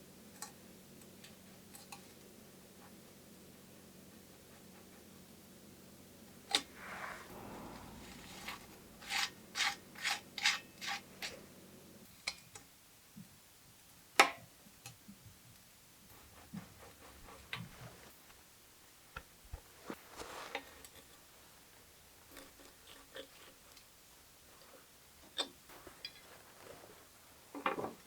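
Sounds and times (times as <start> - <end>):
quick scraping strokes: 6.5 - 11.4.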